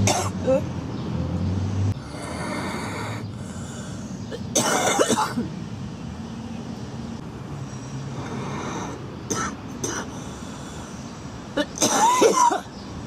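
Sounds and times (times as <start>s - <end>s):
girl coughing: 0.1s - 0.6s, 4.6s - 5.5s, 9.3s - 10.1s, 11.6s - 12.7s.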